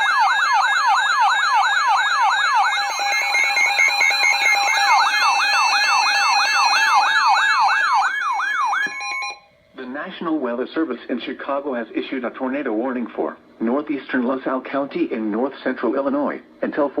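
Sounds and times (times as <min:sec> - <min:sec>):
electronic yelp siren: 0:00.0 - 0:09.6
steady alert tones: 0:02.7 - 0:10.0.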